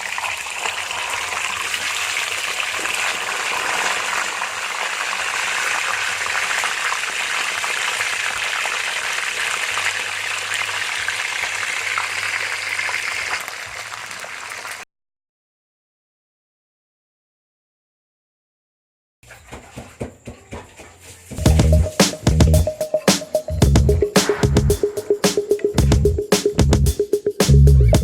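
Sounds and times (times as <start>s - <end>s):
fish sizzling in hot oil: 0.0s - 14.8s.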